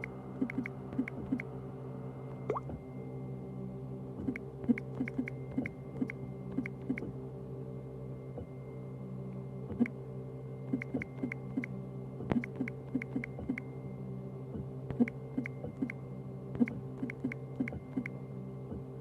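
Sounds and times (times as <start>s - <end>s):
steady electrical hum: 0.0s - 19.0s.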